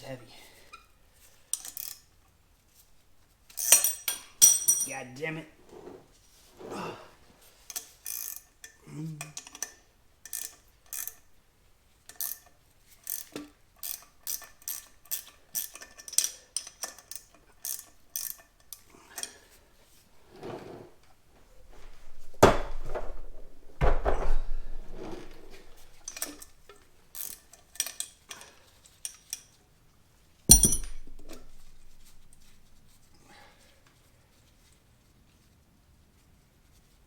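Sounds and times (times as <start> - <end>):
metal knocks and scrapes: 21.4 - 26.4, 30.5 - 32.8.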